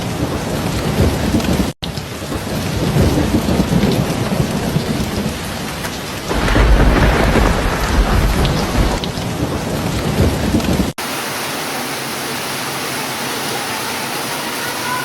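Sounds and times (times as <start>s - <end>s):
heavy rain falling: 0.0s - 15.0s
rolling thunder rumble: 0.1s - 10.9s.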